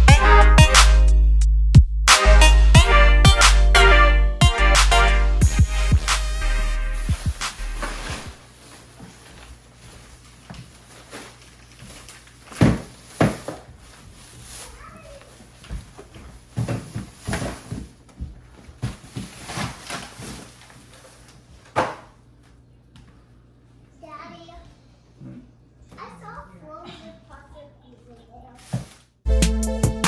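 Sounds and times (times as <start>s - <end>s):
objects knocking and thumping: 10.5s - 14.0s, 15.6s - 20.6s.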